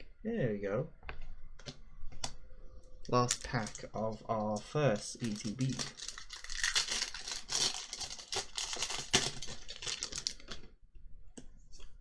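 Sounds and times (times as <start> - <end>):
cards being handled: 3.1 - 10.6
foil wrapper tearing and crinkling: 5.1 - 10.5.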